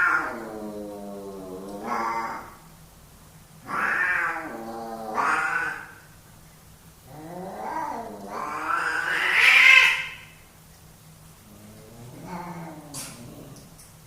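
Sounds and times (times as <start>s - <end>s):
cats yowling: 0.0s - 2.6s, 3.6s - 6.0s, 7.1s - 10.3s, 11.6s - 13.7s.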